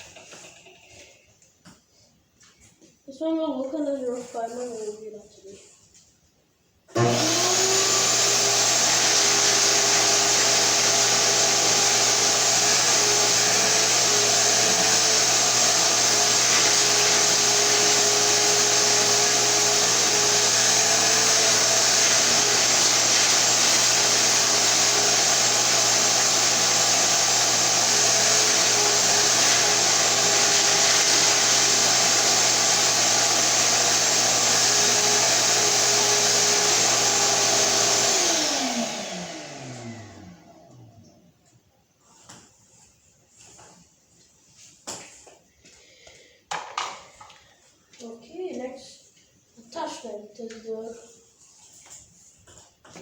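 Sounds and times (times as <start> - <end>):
shop vacuum running: 6.9 - 41.2.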